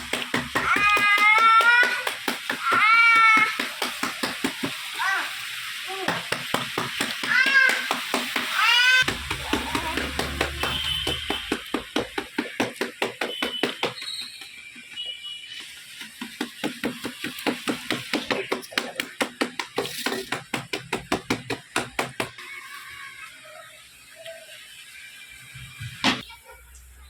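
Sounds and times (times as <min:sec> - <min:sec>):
rapid even knocking: 0:09.0 - 0:13.9.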